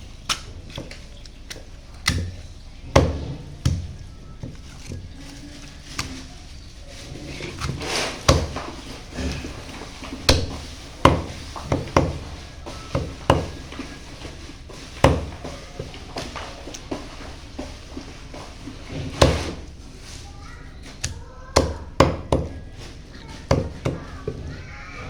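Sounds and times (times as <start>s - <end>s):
soft cutting and handling sounds: 0.0s - 21.8s
knife chopping on board: 0.2s - 5.0s, 7.6s - 13.6s, 15.0s - 17.0s, 21.0s - 22.6s.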